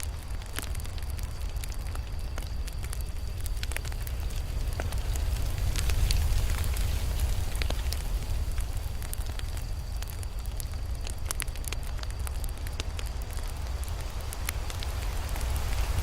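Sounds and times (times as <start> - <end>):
burning wood crackling and popping: 0.0 - 16.0
campfire flames rumbling: 0.0 - 16.0.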